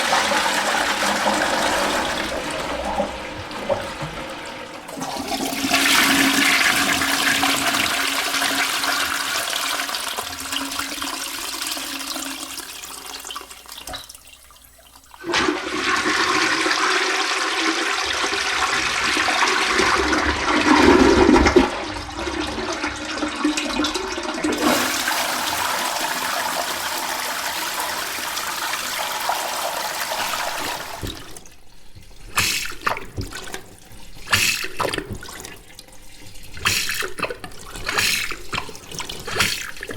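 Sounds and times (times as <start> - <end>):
deep gurgling water: 0.0 - 10.5, 17.8 - 29.2, 29.8 - 39.9
toilet flushing: 0.0 - 39.9
small water splashes: 30.2 - 39.9.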